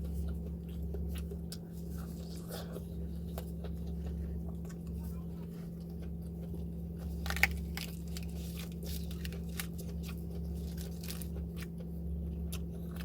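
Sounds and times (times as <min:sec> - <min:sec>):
person chewing crisp food: 0:00.0 - 0:13.0.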